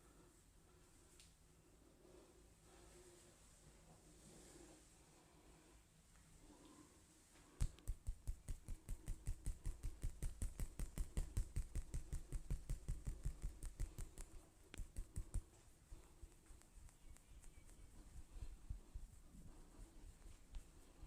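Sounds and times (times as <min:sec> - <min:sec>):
hands slapping on body: 0:07.6 - 0:15.6.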